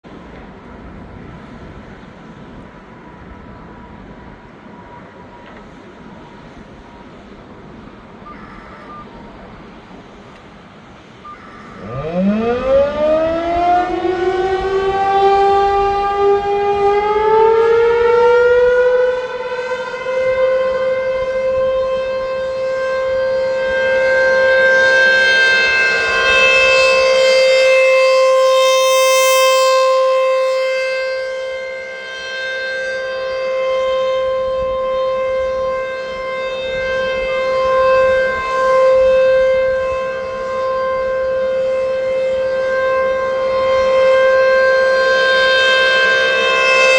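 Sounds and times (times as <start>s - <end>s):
warning siren winding up: 11.2s - 46.9s.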